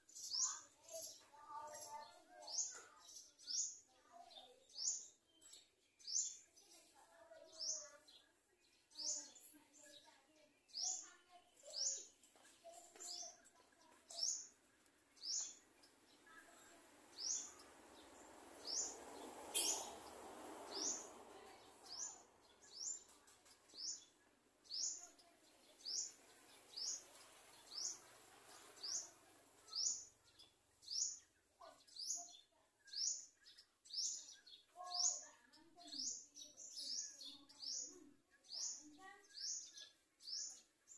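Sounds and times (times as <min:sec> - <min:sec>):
bird chirping: 0:00.0 - 0:40.9.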